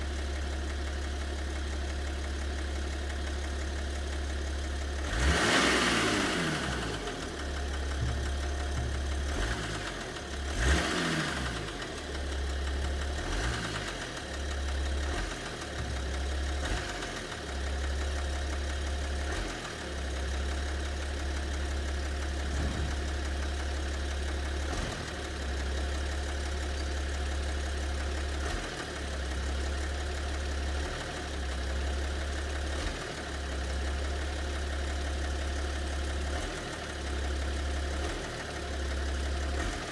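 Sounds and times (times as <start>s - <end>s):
diesel engine idling: 0.0s - 39.9s
engine knocking: 0.0s - 39.9s
engine revving: 5.0s - 12.4s, 13.0s - 17.6s, 19.1s - 19.9s, 22.2s - 26.8s, 28.4s - 29.1s, 32.7s - 33.3s, 36.3s - 36.8s, 39.4s - 39.9s.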